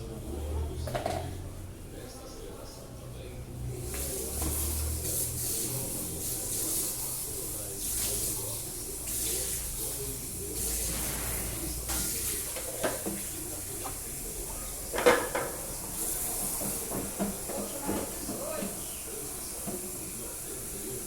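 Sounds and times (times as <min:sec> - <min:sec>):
pots and utensils clinking: 0:10.6 - 0:20.0
loud clank: 0:10.7 - 0:13.5.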